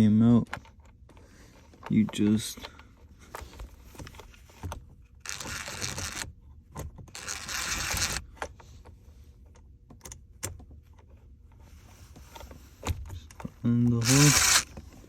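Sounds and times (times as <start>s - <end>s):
impact driver bursts: 14.0s - 14.7s.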